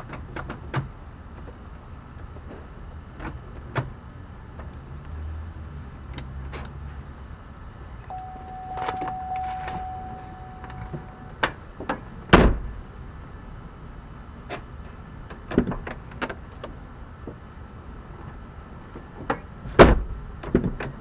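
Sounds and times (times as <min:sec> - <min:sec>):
steady tone: 0:08.1 - 0:11.4.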